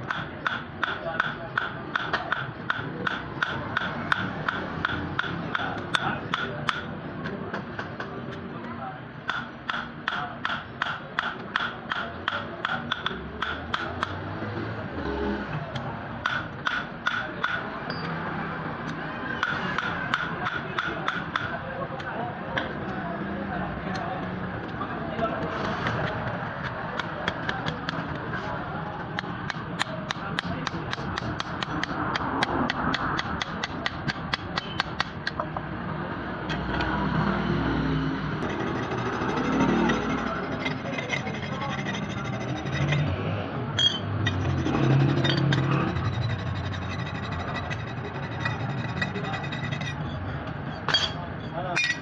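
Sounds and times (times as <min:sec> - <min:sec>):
hammer striking metal: 0:00.0 - 0:07.4, 0:09.3 - 0:14.2, 0:15.8 - 0:17.7, 0:19.4 - 0:21.6, 0:29.2 - 0:35.4, 0:38.4 - 0:43.1, 0:43.8 - 0:52.0.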